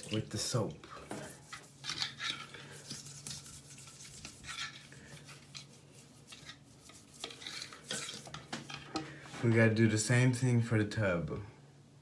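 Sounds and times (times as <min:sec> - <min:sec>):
toothbrush scrubbing a sink: 0:00.0 - 0:09.0.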